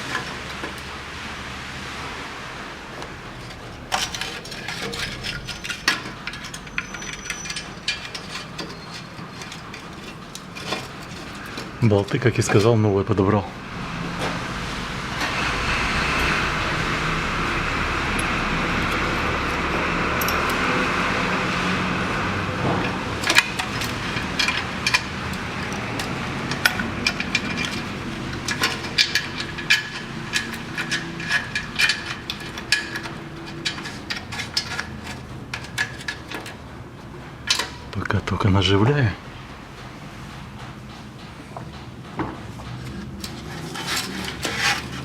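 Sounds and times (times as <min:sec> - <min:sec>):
steady noise: 0:09.7 - 0:43.0.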